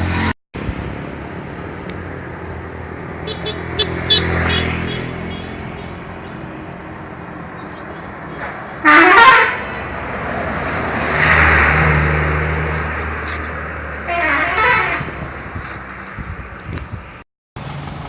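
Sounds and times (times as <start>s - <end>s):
bus passing: 0.0s - 18.0s
multi-tone musical bus horns: 3.3s - 6.4s, 8.8s - 9.9s, 14.0s - 15.2s.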